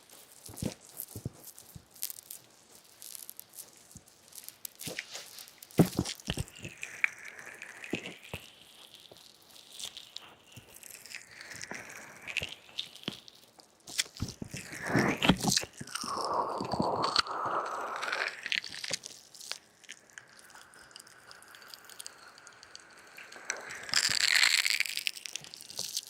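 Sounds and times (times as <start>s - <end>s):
fingers scratching on microphone: 14.2s - 19.0s.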